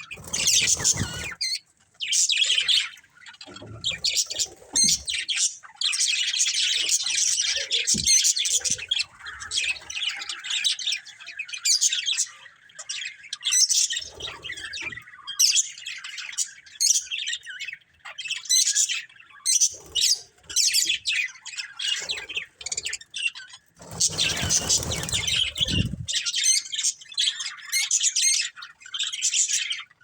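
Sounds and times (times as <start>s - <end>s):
budgerigars chirping and squawking: 0.0s - 30.0s.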